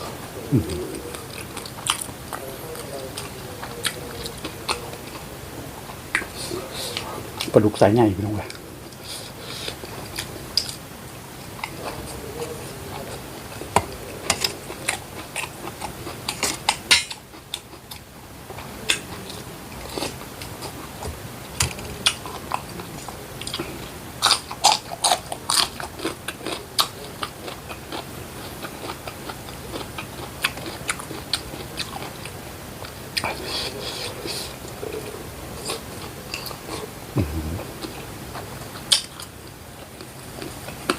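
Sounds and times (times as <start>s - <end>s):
wet mouth clicks: 37.2s - 37.9s.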